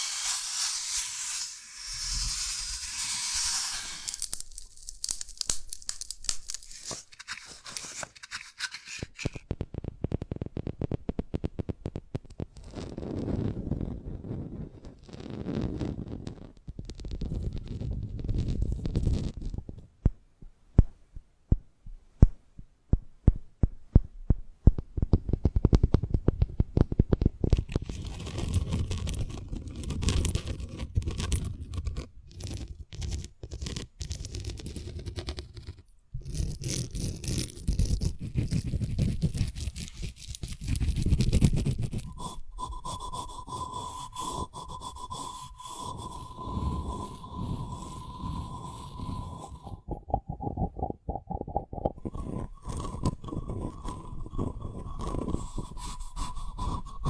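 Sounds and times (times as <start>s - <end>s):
seed pod crackling and rustling: 0.0s - 9.5s, 27.5s - 57.0s
dry seed pod cracking: 2.8s - 9.4s, 36.3s - 43.4s.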